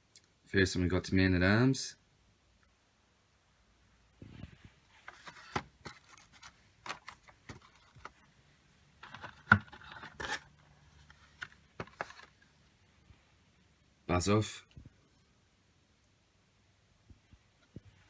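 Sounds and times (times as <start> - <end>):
packaging scraping rustles: 4.9 - 8.3, 9.0 - 12.5.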